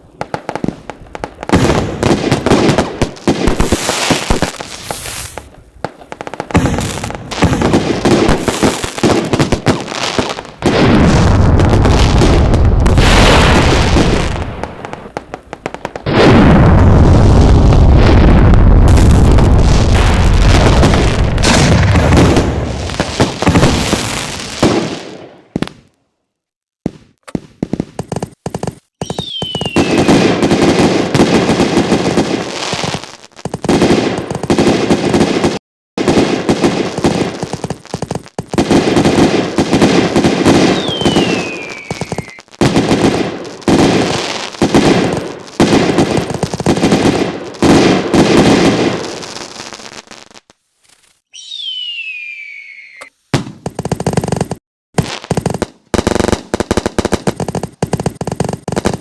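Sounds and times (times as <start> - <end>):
fireworks booming: 0.0 - 25.9, 26.8 - 59.0
fireworks bangs and crackling: 0.0 - 26.0, 26.8 - 59.0
falling firework whistle: 3.7 - 5.5, 29.0 - 30.3, 40.6 - 42.5, 50.8 - 53.6.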